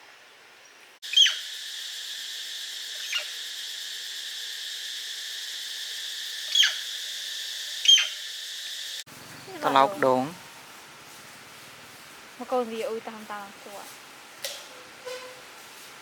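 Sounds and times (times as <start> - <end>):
high insect drone: 1.0 - 15.9
sharp high descending calls: 9.4 - 10.7.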